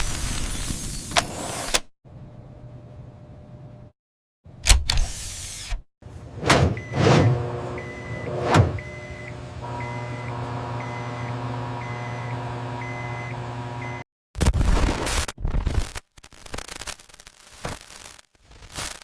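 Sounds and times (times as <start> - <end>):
microwave oven humming: 2.1 - 3.9, 6.5 - 14.0.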